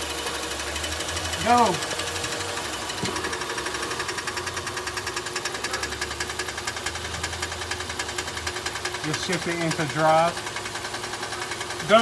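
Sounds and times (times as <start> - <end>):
engine low running hum: 0.0 - 12.0.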